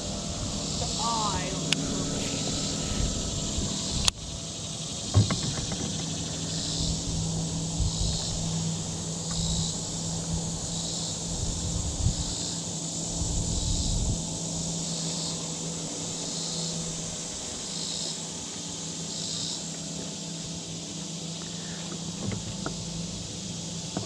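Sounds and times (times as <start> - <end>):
insects buzzing: 0.0 - 24.0
steady low hum: 0.0 - 24.0
knock: 5.1 - 6.0.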